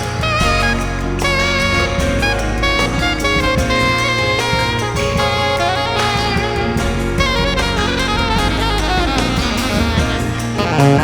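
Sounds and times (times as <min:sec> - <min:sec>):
live band playing: 0:00.0 - 0:11.0.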